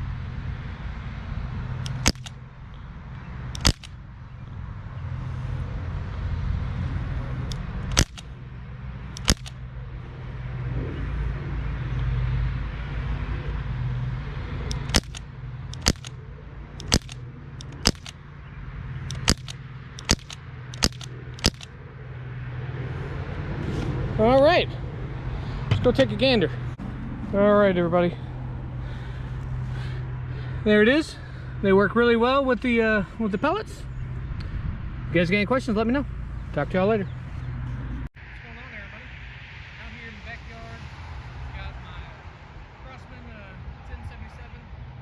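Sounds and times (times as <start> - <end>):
low traffic rumble: 0.0 - 45.0
pellet rifle cracks: 1.9 - 2.4, 3.6 - 4.0, 7.5 - 8.3, 9.1 - 9.6, 14.7 - 16.2, 16.8 - 18.2, 19.0 - 21.7.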